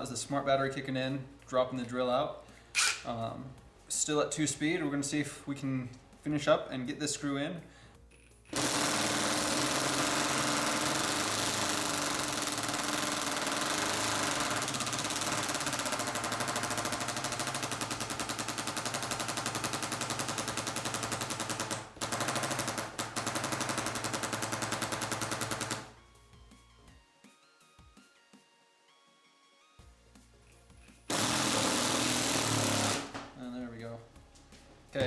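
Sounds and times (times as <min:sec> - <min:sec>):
impact driver driving screw into wood: 0:02.8 - 0:03.1, 0:08.5 - 0:25.8, 0:31.1 - 0:33.3.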